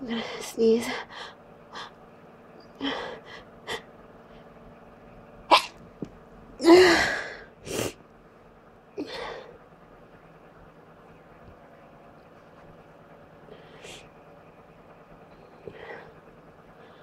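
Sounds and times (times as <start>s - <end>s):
person sneezing: 5.5s - 5.8s.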